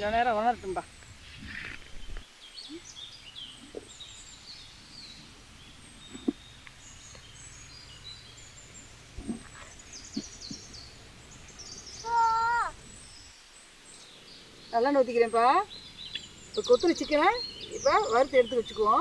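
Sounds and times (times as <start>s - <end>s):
small birds chirping: 0.0s - 19.0s
loud descending bird call: 12.0s - 12.8s.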